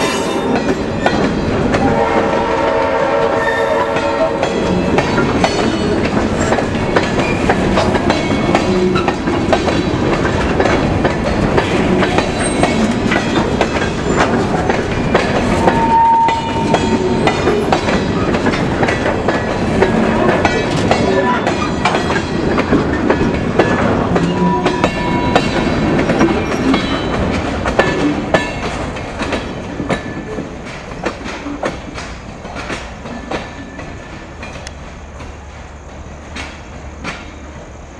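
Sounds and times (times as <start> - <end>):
freight train wheels clicking: 0.0 - 37.9
wheel squeal: 15.6 - 18.3.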